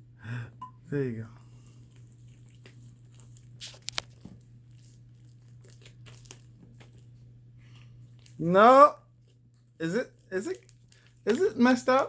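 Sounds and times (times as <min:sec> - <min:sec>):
putty crackling and tearing: 0:01.9 - 0:07.0.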